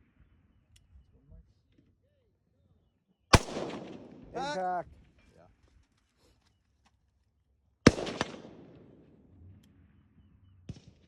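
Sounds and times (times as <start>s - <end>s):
rifle shot with echo: 3.3s - 4.8s, 7.8s - 9.4s, 10.7s - 11.0s
sharp crack: 3.4s - 4.6s.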